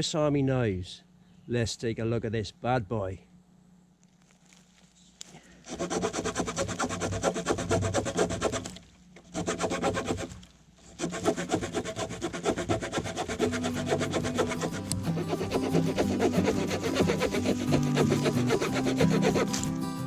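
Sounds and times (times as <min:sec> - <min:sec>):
blade rasping on wood: 0:05.7 - 0:19.8.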